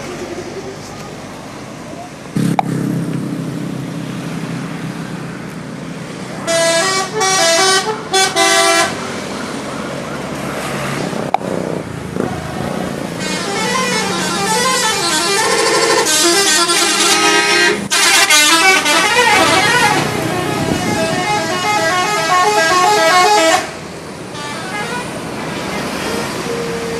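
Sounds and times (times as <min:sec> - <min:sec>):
multi-tone bus horn melody: 0:06.4 - 0:09.0, 0:13.1 - 0:25.3.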